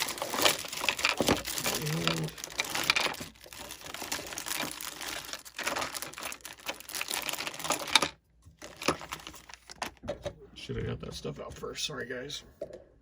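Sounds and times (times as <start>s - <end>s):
small parts clicking and rustling: 0.0s - 10.3s.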